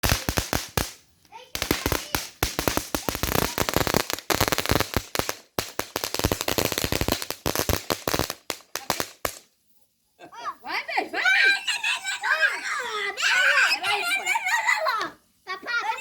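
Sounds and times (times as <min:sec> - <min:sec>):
firecrackers popping: 0:00.0 - 0:09.6.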